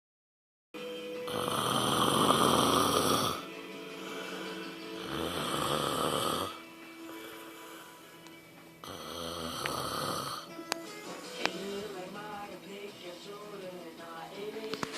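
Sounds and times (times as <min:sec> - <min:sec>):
background music: 0:00.8 - 0:14.9
snoring: 0:01.3 - 0:08.2, 0:08.8 - 0:10.5.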